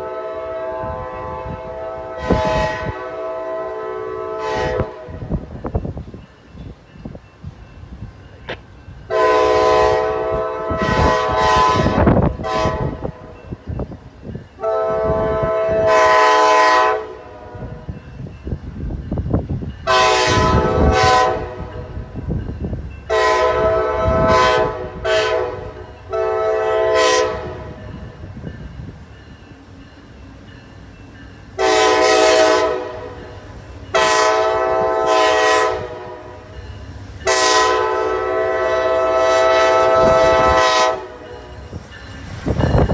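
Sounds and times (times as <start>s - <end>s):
locomotive horn blasts: 0.0s - 5.4s, 9.1s - 13.3s, 14.6s - 17.9s, 19.8s - 22.0s, 23.1s - 27.9s, 31.6s - 36.5s, 37.2s - 41.6s
train rumble: 0.0s - 42.9s.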